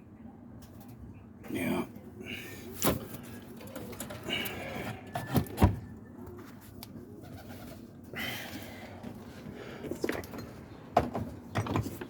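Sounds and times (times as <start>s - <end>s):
pigeons cooing: 7.0s - 8.9s.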